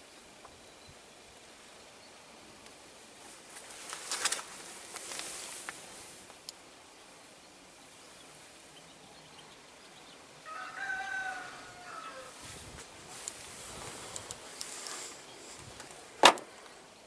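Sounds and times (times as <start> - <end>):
rooster crowing: 10.4 - 12.5.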